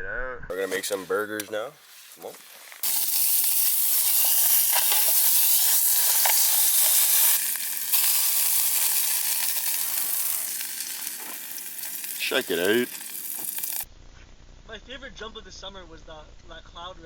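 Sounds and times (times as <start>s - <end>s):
burgers sizzling: 0.5s - 13.9s.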